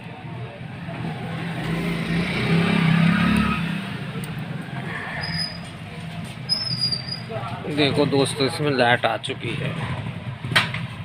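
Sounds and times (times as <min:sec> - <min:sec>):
vehicle passing by: 0:00.8 - 0:06.4.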